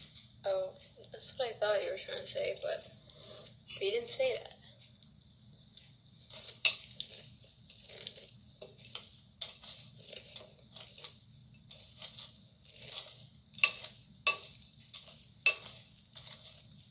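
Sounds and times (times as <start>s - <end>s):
spoon clicking in cereal bowl: 6.3s - 16.8s.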